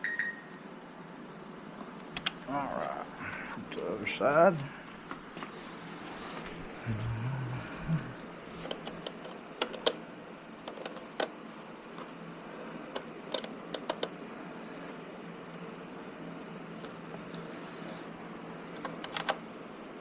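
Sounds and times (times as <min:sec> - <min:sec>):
low hum: 0:02.3 - 0:09.1
tools clicking and tapping: 0:13.0 - 0:14.1.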